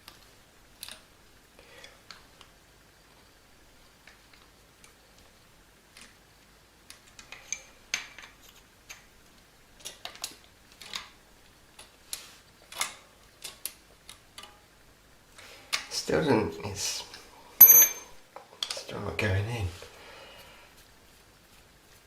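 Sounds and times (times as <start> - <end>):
clicks and clinks of metal parts: 17.6 - 18.8.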